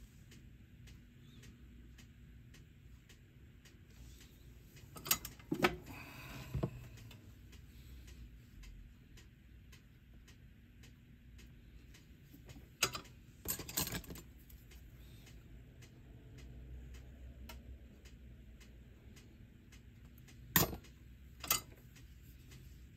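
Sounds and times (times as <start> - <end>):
faint ticking: 0.0 - 22.9
small tools clicking and rattling: 4.9 - 5.8, 12.5 - 14.6, 20.6 - 21.8.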